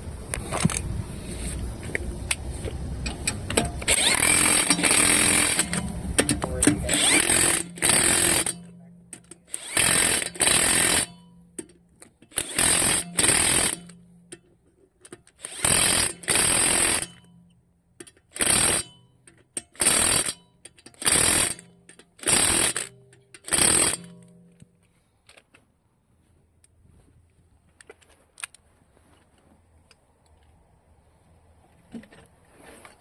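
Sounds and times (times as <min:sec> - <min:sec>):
impact wrench hammering: 0:03.0 - 0:14.4, 0:15.4 - 0:24.6.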